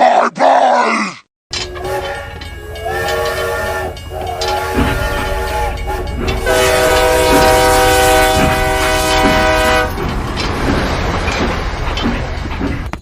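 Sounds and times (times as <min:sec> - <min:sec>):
train wheels clattering on rails: 0:01.5 - 0:13.0
train horn blast: 0:01.6 - 0:10.1.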